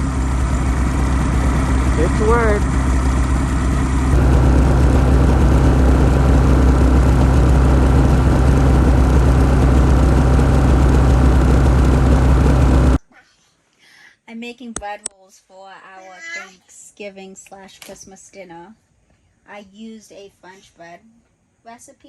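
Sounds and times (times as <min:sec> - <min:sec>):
snowmobile engine running: 0:00.0 - 0:13.0.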